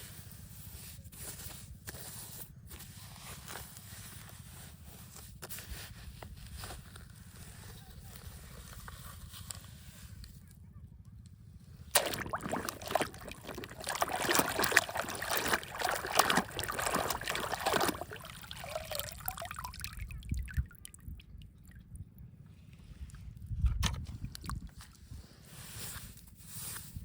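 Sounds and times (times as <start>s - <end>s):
water splashing and trickling: 11.9s - 22.0s, 23.8s - 24.9s.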